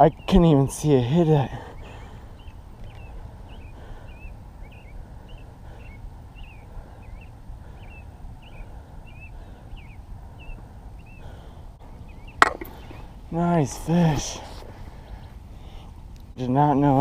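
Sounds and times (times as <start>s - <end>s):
bird chirping: 0.0s - 0.9s, 1.6s - 13.2s
low rumble of wind: 0.0s - 17.0s.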